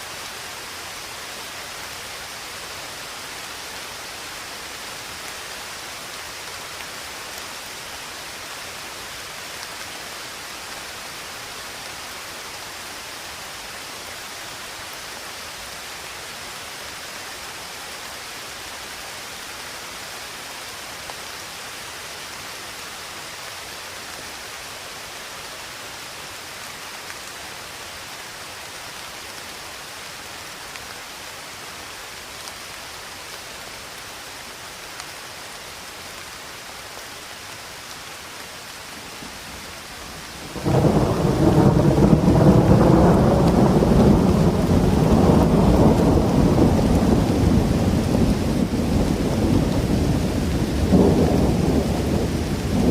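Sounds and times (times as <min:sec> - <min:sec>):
steady rain falling: 0:00.0 - 0:52.9.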